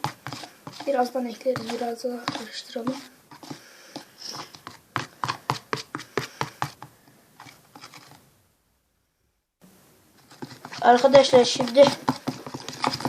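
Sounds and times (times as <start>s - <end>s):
stirrer knocking on container: 0.0s - 3.6s, 10.3s - 13.0s.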